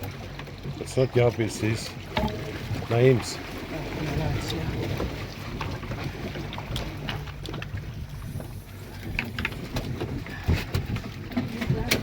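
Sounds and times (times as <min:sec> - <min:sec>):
boat engine humming: 0:00.0 - 0:12.0
wind on microphone: 0:07.7 - 0:12.0.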